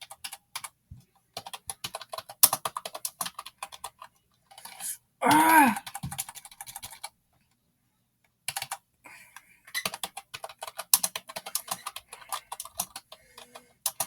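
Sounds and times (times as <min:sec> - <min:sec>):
clicky keyboard typing: 0:00.0 - 0:00.8, 0:01.4 - 0:04.8, 0:08.5 - 0:08.8, 0:09.7 - 0:14.0.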